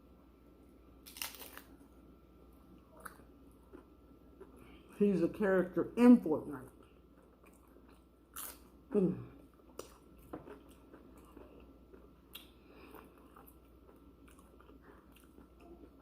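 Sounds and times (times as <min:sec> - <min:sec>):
person crunching chips: 0:01.0 - 0:01.8, 0:07.5 - 0:08.7.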